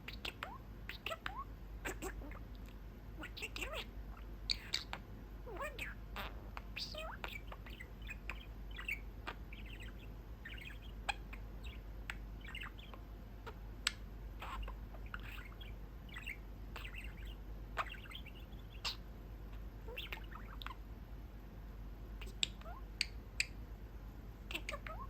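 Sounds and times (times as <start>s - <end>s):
budgie chattering and warbling: 0.0s - 20.8s, 24.5s - 25.0s.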